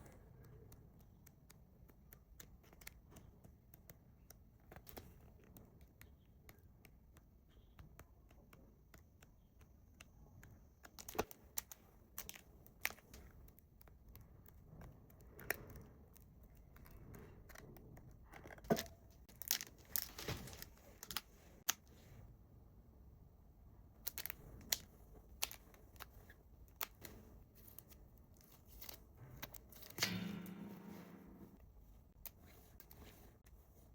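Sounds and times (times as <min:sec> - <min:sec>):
packaging rustling and tearing: 0:19.3 - 0:21.3.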